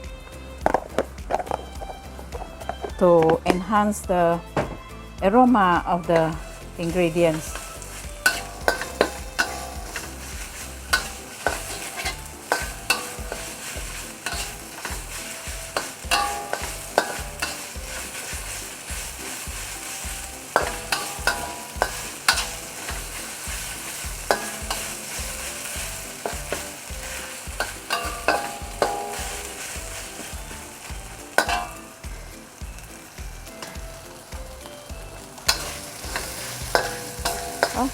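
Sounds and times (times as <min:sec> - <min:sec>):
paste sizzling in hot oil: 0:05.6 - 0:37.9
spatula knocking and scraping a pan: 0:06.2 - 0:32.2, 0:35.4 - 0:37.9.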